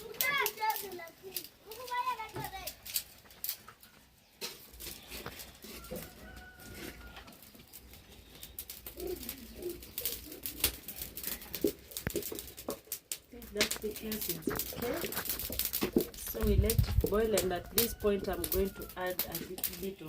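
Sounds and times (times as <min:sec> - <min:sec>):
dove cooing: 0:08.3 - 0:11.9.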